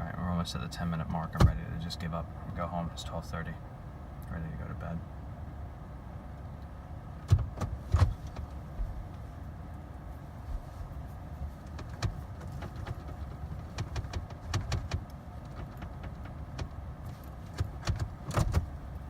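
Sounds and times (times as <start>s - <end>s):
steady low hum: 0.0s - 19.0s
clicks and knocks in car cabin: 1.0s - 1.8s, 7.2s - 9.2s, 11.5s - 19.0s.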